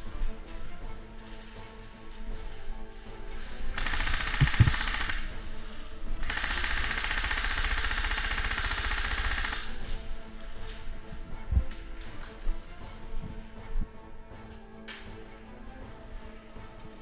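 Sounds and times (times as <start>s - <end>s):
airsoft gun firing full auto: 3.8s - 5.4s, 6.2s - 9.9s.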